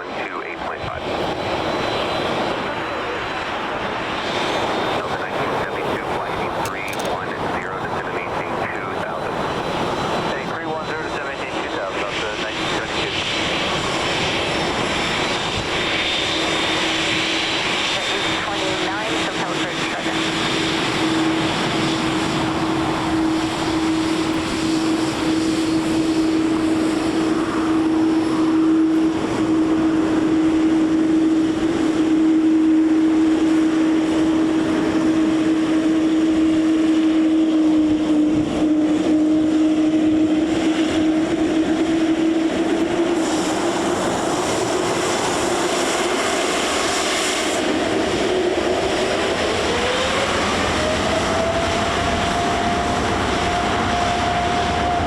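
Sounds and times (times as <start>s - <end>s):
jet engines roaring and whining: 0.0s - 55.0s.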